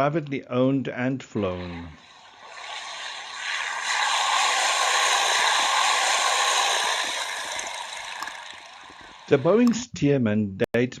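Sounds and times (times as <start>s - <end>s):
aircraft passing overhead: 1.6s - 9.6s.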